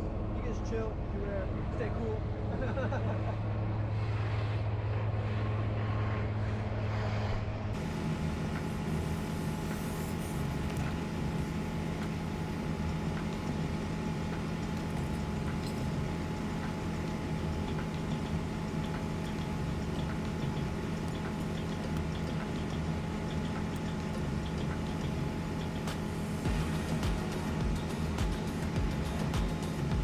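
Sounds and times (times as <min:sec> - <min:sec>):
truck engine idling: 0:07.6 - 0:30.0.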